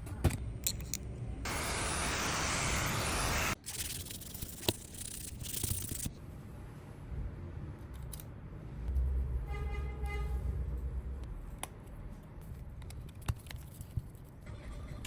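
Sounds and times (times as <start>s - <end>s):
vehicle horn honking: 9.5s - 10.4s.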